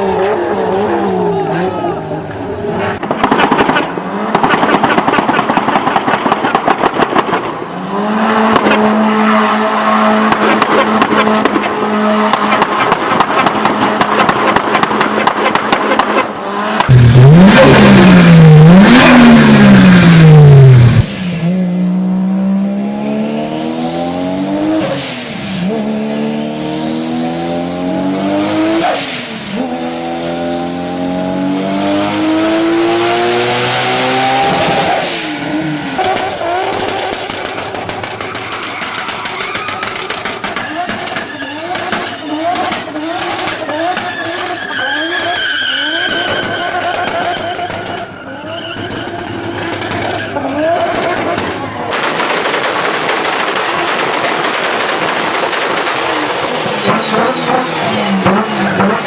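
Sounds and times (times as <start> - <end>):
car engine revving: 7.8 - 38.8, 48.3 - 59.0
car accelerating through gears: 16.4 - 36.7, 56.0 - 59.0.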